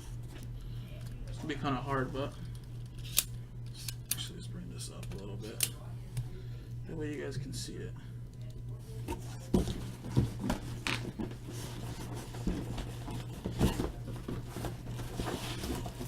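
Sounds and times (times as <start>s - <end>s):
cardboard boxes handled by hand: 9.0s - 16.0s.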